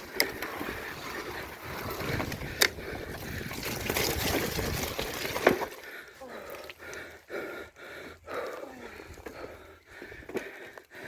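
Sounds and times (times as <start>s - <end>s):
bike tyres splashing through mud: 0.0s - 6.9s.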